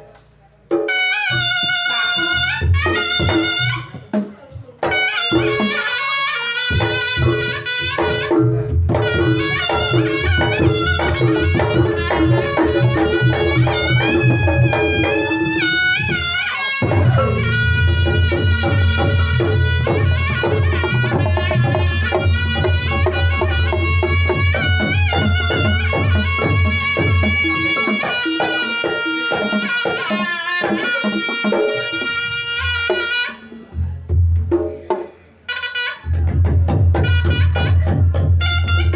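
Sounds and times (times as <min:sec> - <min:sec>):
struck gamelan percussion: 0:00.7 - 0:38.9
shawm playing reedy melody: 0:00.9 - 0:04.1, 0:04.8 - 0:34.1, 0:35.5 - 0:38.9
hand drum strokes: 0:08.1 - 0:32.4
deep drum strokes: 0:16.8 - 0:27.4.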